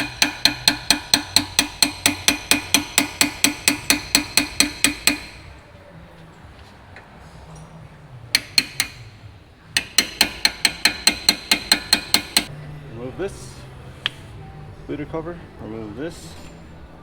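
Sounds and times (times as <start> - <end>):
hammer striking metal punch: 0.0 - 5.6, 8.3 - 12.5.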